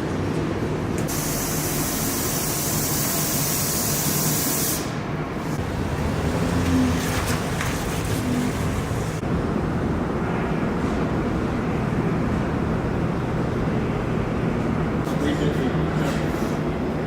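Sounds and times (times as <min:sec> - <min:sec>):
compressed air hissing: 0:01.1 - 0:05.8
low rumble of shop machinery: 0:04.9 - 0:17.0.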